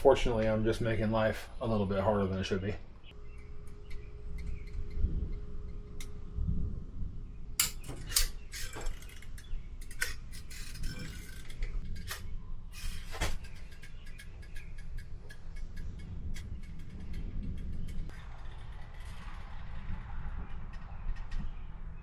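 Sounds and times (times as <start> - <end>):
metal objects clinking: 7.6 - 12.2.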